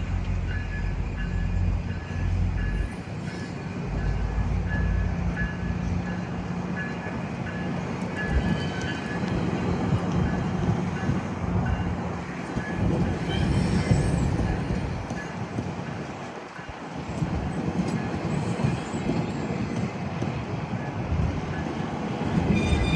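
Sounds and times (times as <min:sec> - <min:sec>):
diesel engine and rail rumble: 0:00.0 - 0:22.9
train bell dinging: 0:00.4 - 0:16.9, 0:21.5 - 0:22.9
high wheel squeal: 0:12.6 - 0:14.8, 0:22.3 - 0:22.9.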